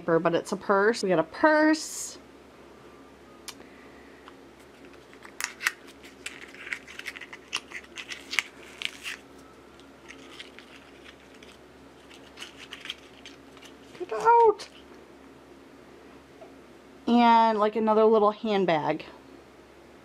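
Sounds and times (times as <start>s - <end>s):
faint steady hum: 0.0s - 20.0s
paper packaging crinkling: 4.6s - 14.9s
sharp clicks and rustles: 9.8s - 15.0s.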